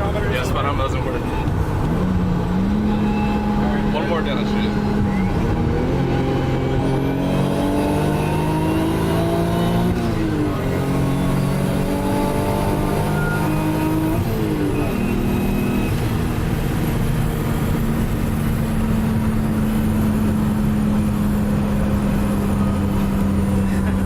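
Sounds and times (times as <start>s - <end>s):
car engine running: 0.0s - 24.0s.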